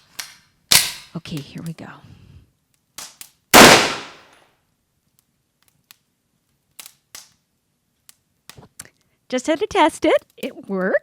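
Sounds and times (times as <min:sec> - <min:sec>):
loud gunshot: 0:03.6 - 0:04.2.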